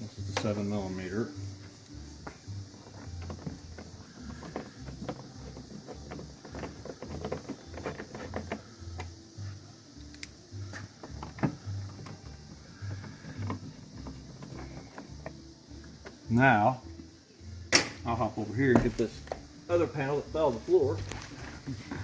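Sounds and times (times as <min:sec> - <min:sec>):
hand tools clicking and tapping: 0:01.8 - 0:09.2, 0:10.1 - 0:16.3.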